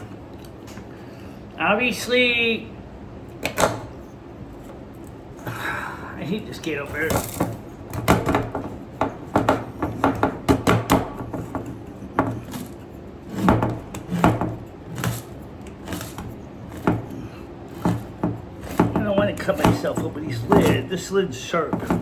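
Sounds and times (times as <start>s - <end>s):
can opener clicking and crunching: 12.3s - 19.8s.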